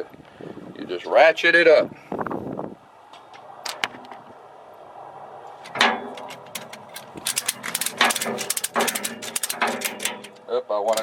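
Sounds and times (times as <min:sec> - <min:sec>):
metal clank: 0:05.7 - 0:11.0
ratchet strap clicks: 0:05.7 - 0:11.0.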